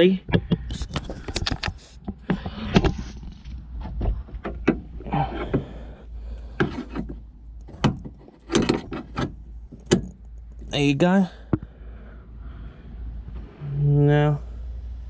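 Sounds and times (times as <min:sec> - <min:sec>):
gas strut clicks and knocks: 0:03.8 - 0:05.7, 0:06.5 - 0:10.7, 0:11.4 - 0:11.7.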